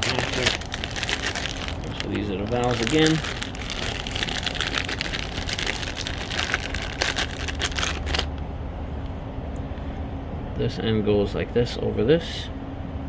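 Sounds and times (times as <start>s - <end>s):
plastic packaging crinkling: 0.0s - 8.4s
steady low hum: 0.0s - 13.0s.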